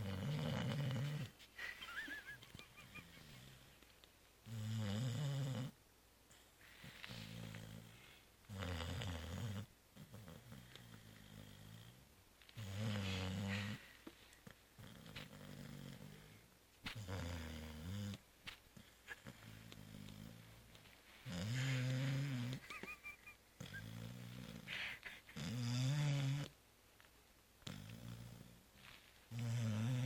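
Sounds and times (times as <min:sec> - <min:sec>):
dog snoring: 0:00.0 - 0:01.4, 0:04.4 - 0:13.9, 0:14.8 - 0:18.2, 0:18.8 - 0:22.6, 0:23.6 - 0:26.6, 0:27.6 - 0:28.6, 0:29.3 - 0:30.0.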